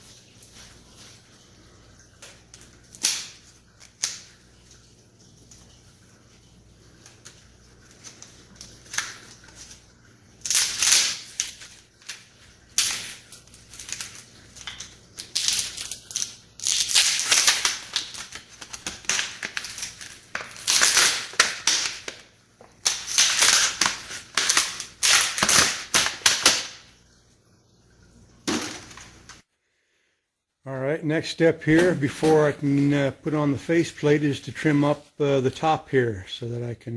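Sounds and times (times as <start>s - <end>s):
plastic mold crackling and crumpling: 10.4s - 26.8s.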